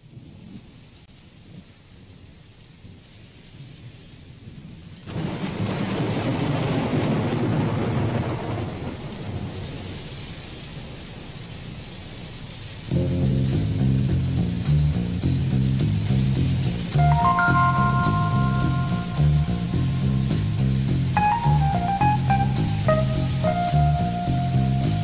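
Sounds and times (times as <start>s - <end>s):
steady rain: 0.0s - 25.0s
thunder rolling: 5.0s - 10.1s, 16.5s - 25.0s.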